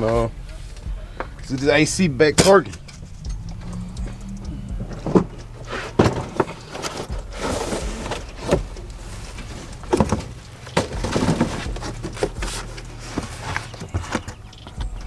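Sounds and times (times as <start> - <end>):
steady low hum: 0.0 - 15.0
knocks and clunks of tools: 9.4 - 12.5.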